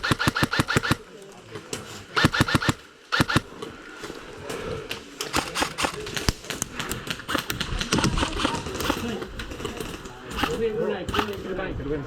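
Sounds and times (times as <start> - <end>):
airsoft gunshots: 0.0 - 1.1, 2.2 - 3.5, 5.2 - 6.3.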